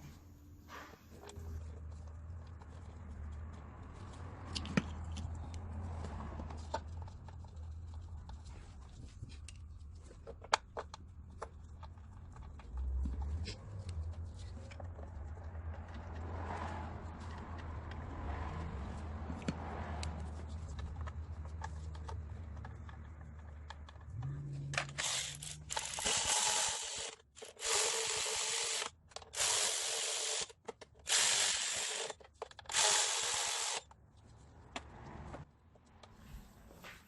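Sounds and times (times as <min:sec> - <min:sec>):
cordless power tool bursts: 0:24.9 - 0:30.5, 0:31.1 - 0:32.1, 0:32.7 - 0:33.8.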